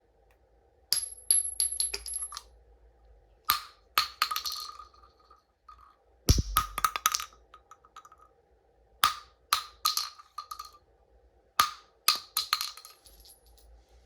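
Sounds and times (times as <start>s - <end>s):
cartridges clinking on floor: 0.9s - 2.6s, 3.5s - 8.2s, 9.0s - 10.8s, 11.6s - 13.8s
heavy thud: 6.3s - 6.9s.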